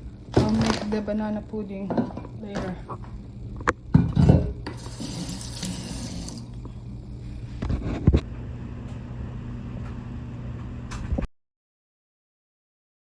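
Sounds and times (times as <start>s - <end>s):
kitchen tap running: 4.0s - 6.7s.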